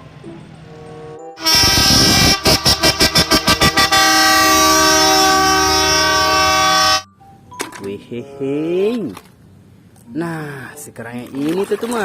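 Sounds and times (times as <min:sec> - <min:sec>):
multi-tone air horn: 0:01.4 - 0:07.1.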